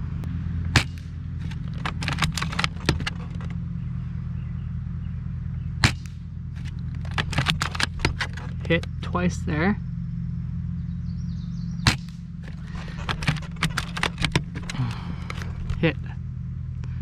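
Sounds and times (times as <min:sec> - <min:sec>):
steady low hum: 0:00.0 - 0:17.0
airsoft rifle crack: 0:00.7 - 0:03.6, 0:05.8 - 0:09.0, 0:11.9 - 0:16.0
rifle bolt clicks: 0:00.8 - 0:03.5, 0:05.8 - 0:09.0, 0:11.9 - 0:15.9.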